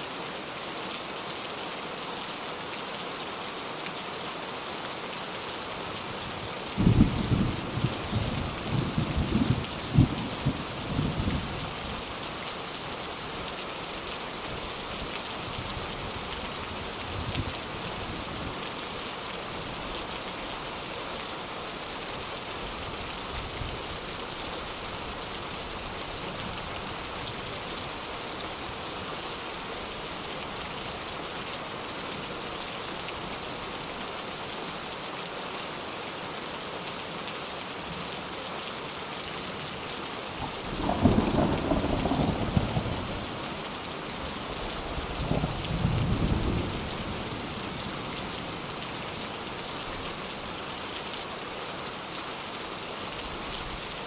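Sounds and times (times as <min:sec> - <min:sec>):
heavy rain falling: 0:00.0 - 0:54.0
thunder rumble: 0:40.5 - 0:43.4.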